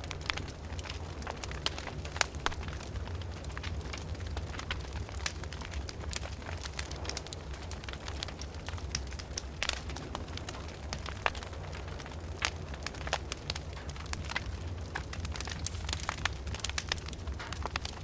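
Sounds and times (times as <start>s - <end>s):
wood fire crackling and popping: 0.0s - 18.0s.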